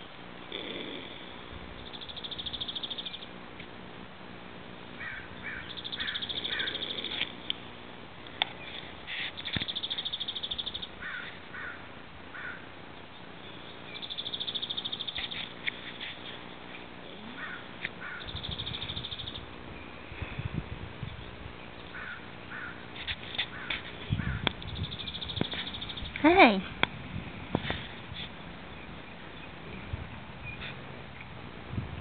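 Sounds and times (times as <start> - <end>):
horse snoring: 0.5 - 1.4, 6.5 - 7.4.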